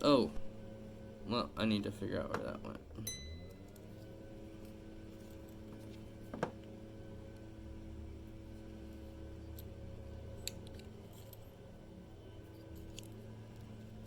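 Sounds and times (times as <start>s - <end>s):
steady low hum: 0.0s - 14.0s
small metal parts clicking: 10.4s - 11.6s, 12.4s - 13.8s.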